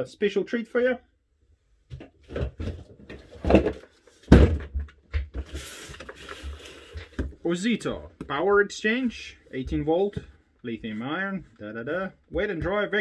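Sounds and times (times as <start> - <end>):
knocks and thumps: 1.9 - 5.5.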